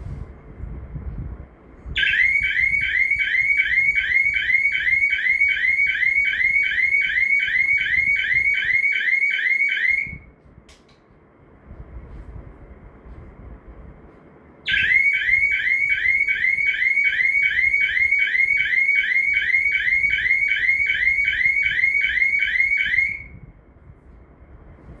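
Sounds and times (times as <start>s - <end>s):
intrusion alarm siren chirping: 2.0s - 10.3s, 14.7s - 23.5s.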